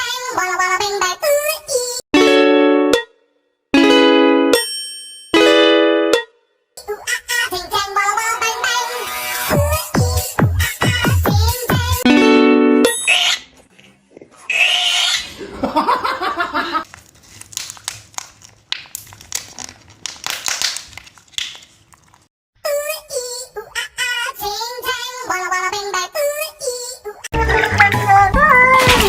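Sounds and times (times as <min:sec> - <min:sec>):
music with singing: 0:07.8 - 0:12.0, 0:27.4 - 0:29.0.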